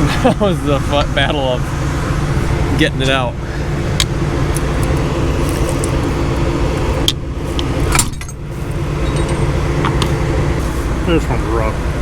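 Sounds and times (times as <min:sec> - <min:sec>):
combine harvester idling: 0:00.0 - 0:12.0
metal hand tools clinking: 0:07.8 - 0:10.2.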